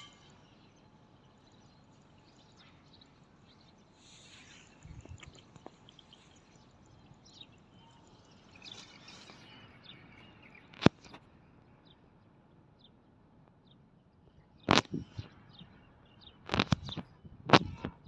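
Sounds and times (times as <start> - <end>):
faint bird chirps: 0.0 - 13.0.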